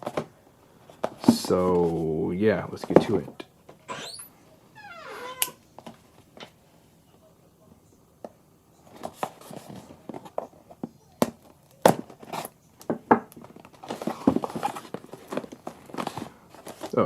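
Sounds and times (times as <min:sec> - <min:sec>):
package rustling and tearing: 0:13.4 - 0:17.0.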